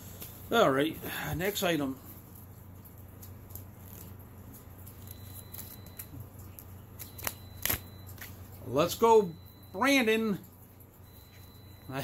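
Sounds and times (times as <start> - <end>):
soft rustling of packages: 0.0 - 10.4.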